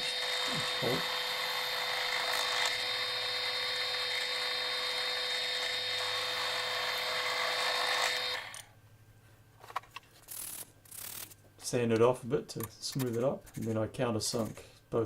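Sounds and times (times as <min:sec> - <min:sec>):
drill press boring plywood: 0:00.0 - 0:08.6.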